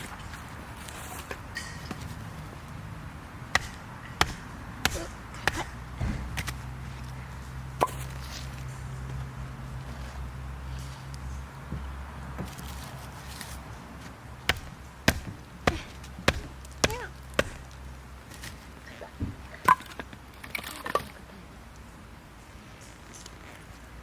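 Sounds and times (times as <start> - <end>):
wood chopping knocks: 3.5 - 6.6, 14.5 - 17.8.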